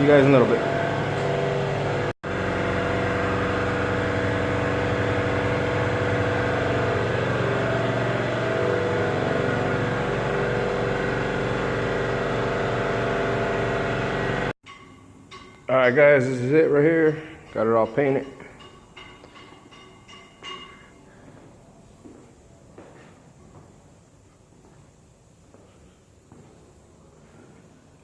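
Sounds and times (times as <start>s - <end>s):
machinery humming: 0.0s - 14.6s.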